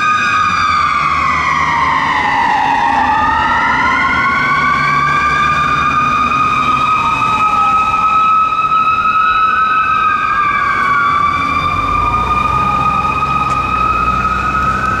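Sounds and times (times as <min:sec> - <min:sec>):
mechanical siren wailing: 0:00.0 - 0:15.0.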